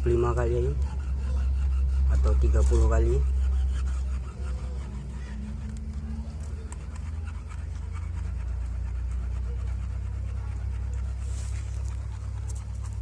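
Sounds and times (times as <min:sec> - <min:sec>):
cable scraping in metal jet: 0:00.0 - 0:05.9.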